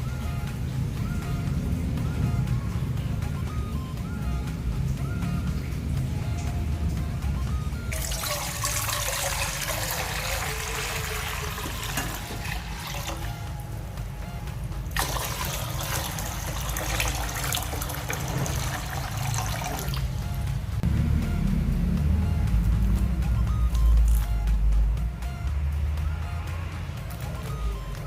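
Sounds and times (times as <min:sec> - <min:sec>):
background music: 0:00.0 - 0:28.0
water pouring: 0:07.9 - 0:13.7, 0:14.9 - 0:20.2.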